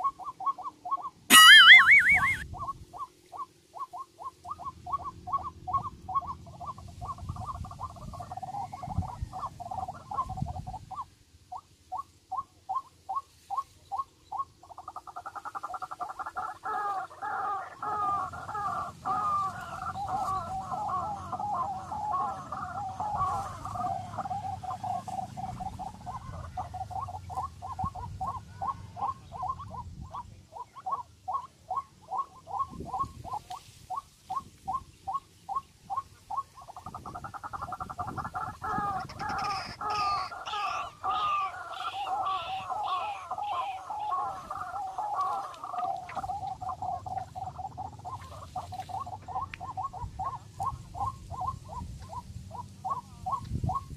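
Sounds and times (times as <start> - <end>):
bird calling rapid notes: 0.0 - 7.6
bird chattering: 0.0 - 53.9.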